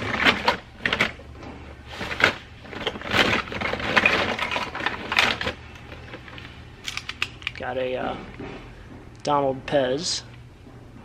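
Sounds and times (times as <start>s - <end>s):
plastic toys clattering: 0.0s - 7.8s.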